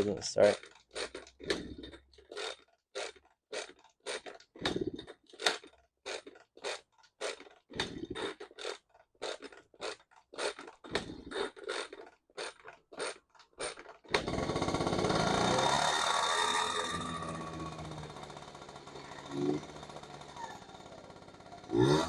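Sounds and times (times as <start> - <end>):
moped pedal-cranking ratchet: 14.1 - 22.0
moped engine running: 14.2 - 22.0.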